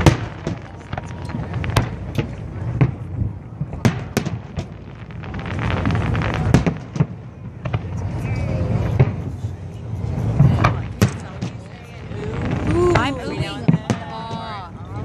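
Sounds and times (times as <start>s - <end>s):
fireworks bangs and crackles: 0.0s - 15.0s.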